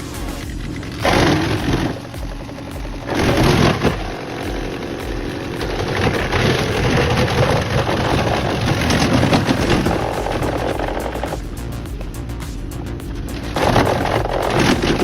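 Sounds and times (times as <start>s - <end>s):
heavy machinery engine: 0.0s - 15.0s
irregular mechanical noise: 0.0s - 15.0s.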